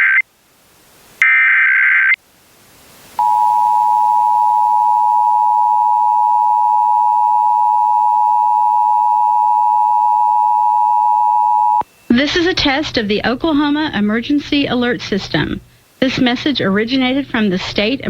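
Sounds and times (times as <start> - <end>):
two-tone attention signal: 3.2 - 11.8.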